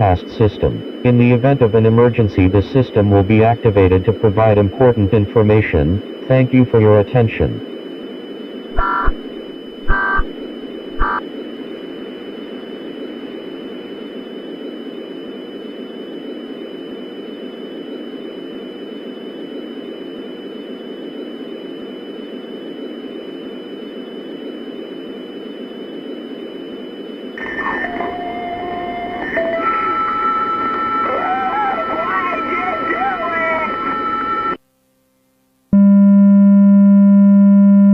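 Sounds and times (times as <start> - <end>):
alert data bursts: 0.0 - 7.6, 8.7 - 9.2, 27.4 - 34.6
static hiss: 0.0 - 34.6.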